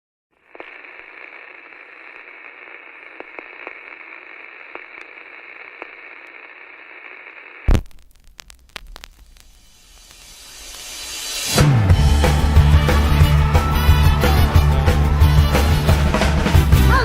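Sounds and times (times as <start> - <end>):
radio static hiss with crackles: 0.3 - 11.6
clicks: 2.2 - 10.9.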